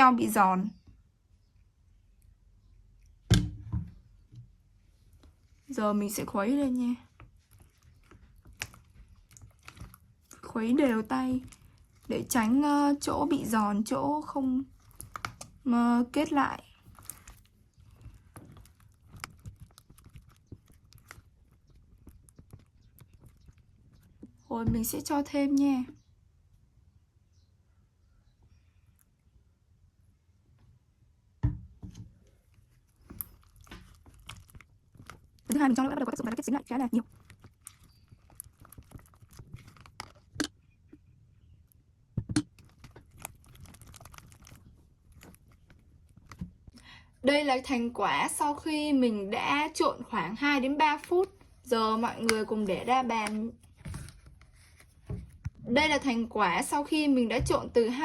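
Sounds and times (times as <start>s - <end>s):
slime stirring sticky clicks: 7.1s - 14.0s, 14.6s - 24.4s, 32.5s - 46.7s.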